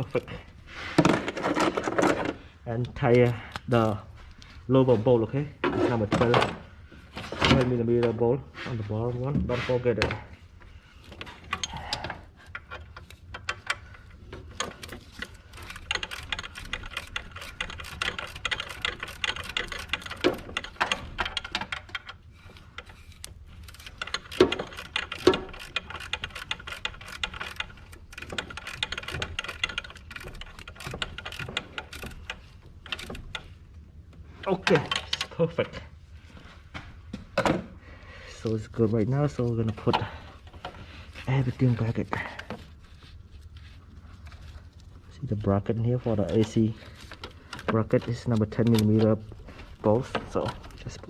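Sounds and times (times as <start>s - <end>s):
ratchet wrench clicking: 14.5s - 22.2s, 22.8s - 33.6s.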